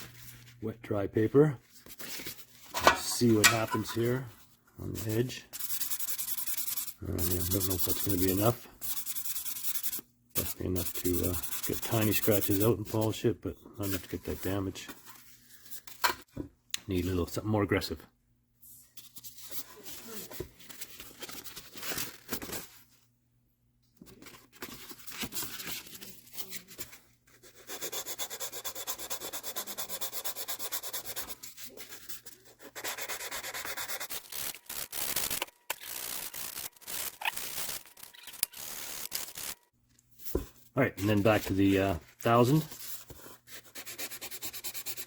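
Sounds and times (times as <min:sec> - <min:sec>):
sandpaper rubbing on metal: 0:05.0 - 0:12.8, 0:27.6 - 0:39.6, 0:43.5 - 0:45.0.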